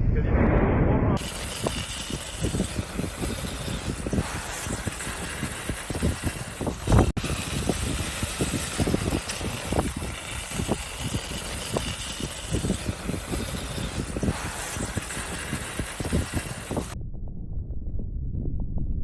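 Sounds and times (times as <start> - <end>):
volcanic eruption rumbling: 0.0 - 17.0
low thumps: 0.0 - 19.0
steady hiss: 1.2 - 17.0.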